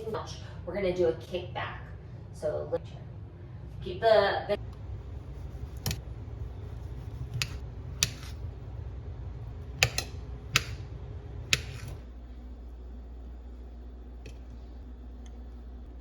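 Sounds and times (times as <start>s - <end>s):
low hum: 4.5s - 16.0s.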